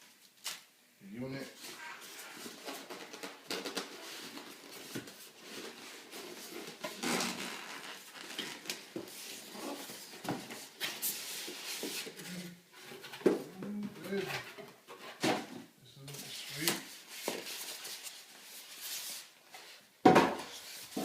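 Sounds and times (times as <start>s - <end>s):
packaging rustling: 1.6s - 11.9s.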